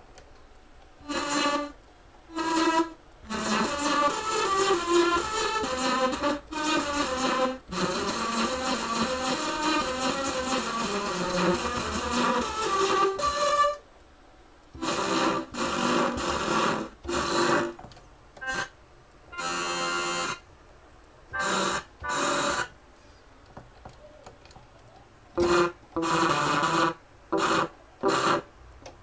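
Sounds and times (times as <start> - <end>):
synthesized keyboard bursts: 1.0 - 13.8, 14.7 - 17.8, 18.4 - 20.5, 21.3 - 22.8, 25.4 - 28.6.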